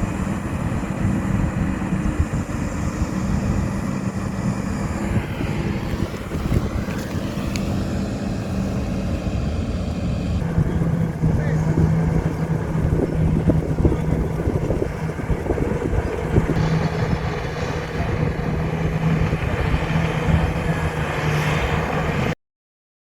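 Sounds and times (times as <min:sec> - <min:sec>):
heavy diesel engine under load: 0:00.0 - 0:22.4
dense rapid clatter: 0:10.4 - 0:21.4.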